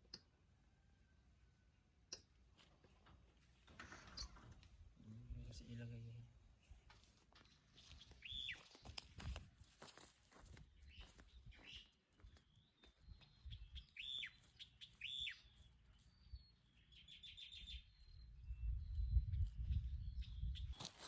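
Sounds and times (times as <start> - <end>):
small birds chirping: 5.6 - 21.0.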